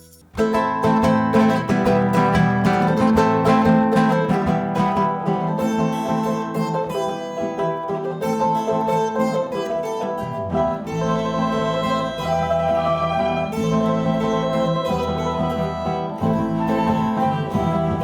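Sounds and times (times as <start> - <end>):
plucked guitars playing: 0.0 - 18.0
low bass line: 10.3 - 18.0.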